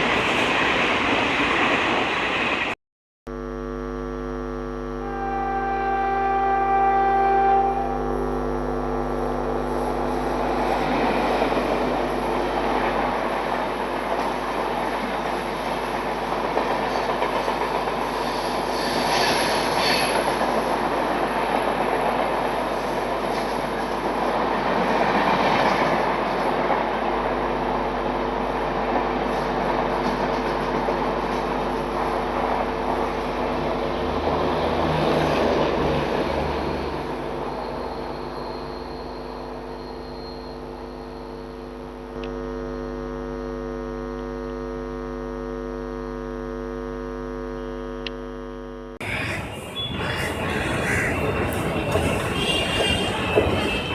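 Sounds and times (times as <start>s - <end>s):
train running past on track: 0.0s - 2.8s, 9.8s - 40.3s, 49.0s - 53.9s.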